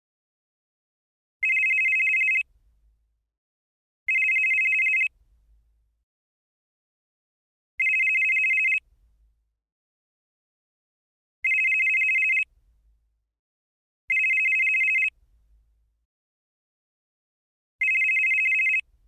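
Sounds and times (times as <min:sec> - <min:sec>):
mobile phone ringing two-tone trill: 0:01.4 - 0:02.4, 0:14.1 - 0:15.1, 0:17.8 - 0:18.8.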